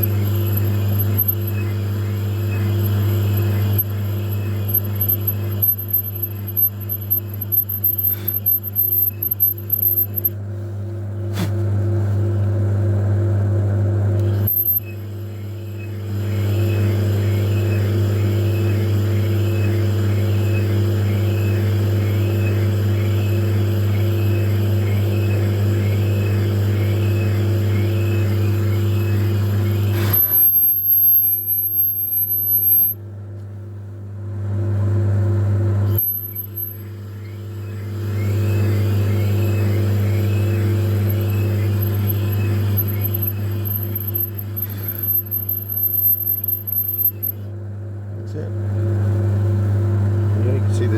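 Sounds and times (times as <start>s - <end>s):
metal lathe cutting: 0.0s - 10.3s, 37.8s - 47.3s.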